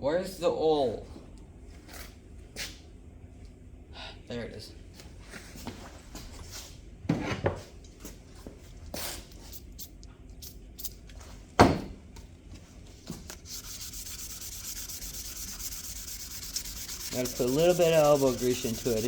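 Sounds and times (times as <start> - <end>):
hand sanding metal: 13.3 - 19.0.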